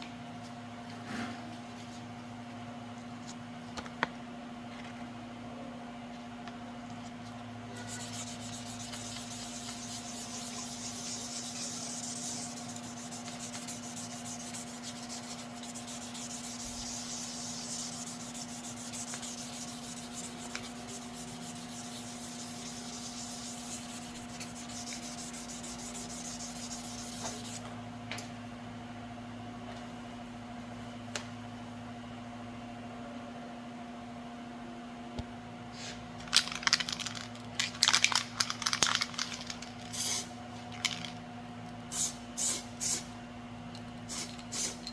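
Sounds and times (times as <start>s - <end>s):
steady low hum: 0.0s - 36.6s
sandpaper rubbing on panel: 7.8s - 27.6s.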